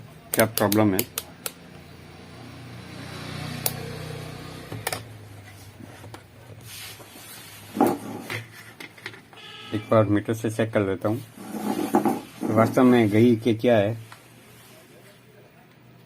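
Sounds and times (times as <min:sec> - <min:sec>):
multimeter probes clicking: 0:00.3 - 0:01.6.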